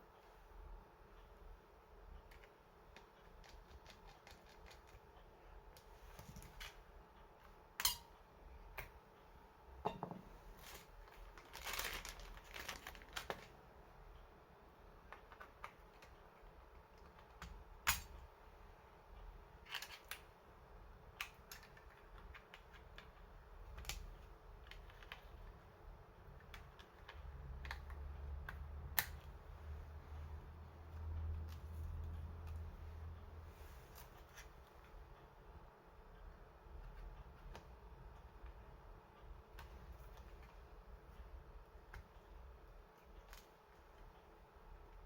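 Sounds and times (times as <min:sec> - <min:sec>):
laptop parts clicking and tapping: 0:02.2 - 0:05.0, 0:15.0 - 0:18.2.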